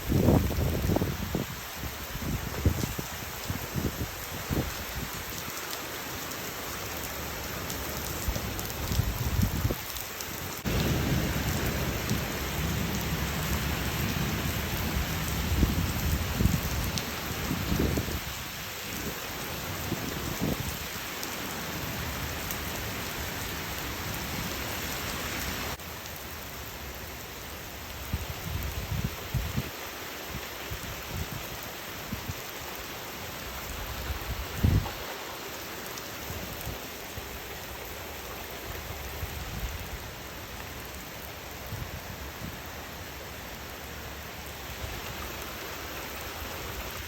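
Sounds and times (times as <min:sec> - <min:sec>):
heavy rain: 0:00.0 - 0:47.0
thunder rumbling: 0:10.6 - 0:18.2.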